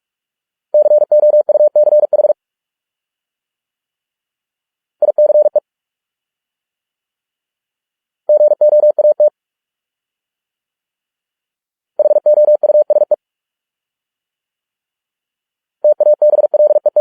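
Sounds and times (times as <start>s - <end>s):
morse code beeps: 0.8s - 2.4s, 5.0s - 5.6s, 8.3s - 9.3s, 15.9s - 17.0s.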